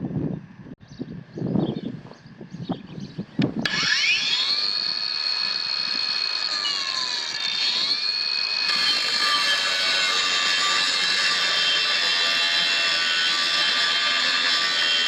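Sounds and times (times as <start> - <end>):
angle grinder whining: 3.6 - 15.0.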